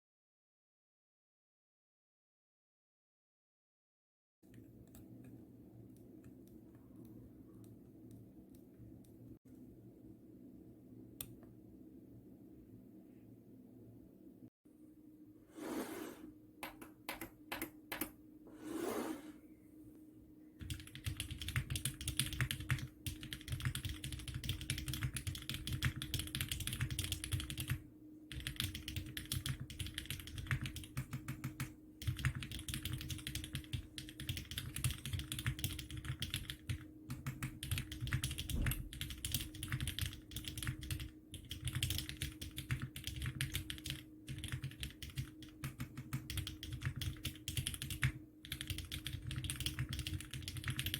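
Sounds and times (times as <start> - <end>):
mechanical keyboard typing: 16.6 - 18.2, 20.6 - 50.9.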